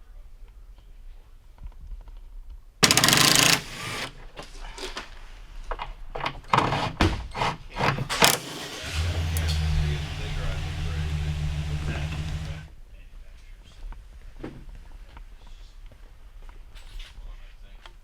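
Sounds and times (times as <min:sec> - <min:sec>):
sharp knocks and clicks: 0:02.8 - 0:04.1
power tool burst: 0:02.8 - 0:04.2, 0:08.1 - 0:12.7
vehicle engine idling: 0:08.3 - 0:12.7.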